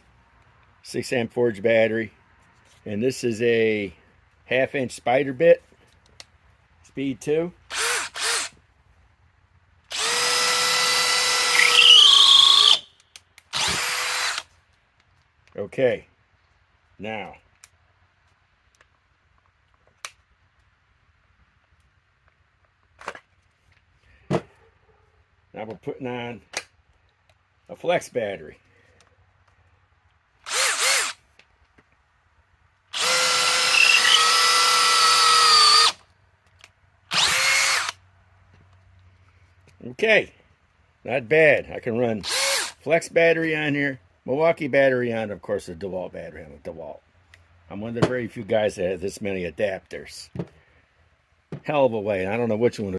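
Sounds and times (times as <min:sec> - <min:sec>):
cordless drill whining: 0:07.7 - 0:08.6, 0:09.9 - 0:14.5, 0:30.4 - 0:31.2, 0:32.9 - 0:36.0, 0:37.1 - 0:38.0, 0:42.2 - 0:42.8
high squeal of drill bit cutting: 0:09.9 - 0:12.9, 0:33.0 - 0:36.0.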